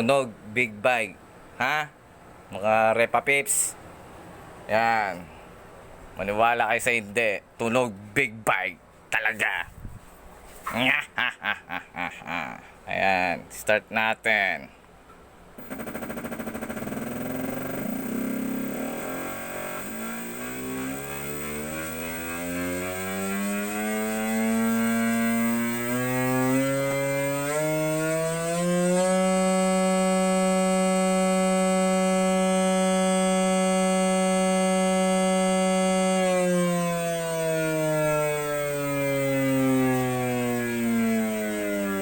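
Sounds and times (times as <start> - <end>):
simulated motorbike engine revving: 15.6 - 42.0.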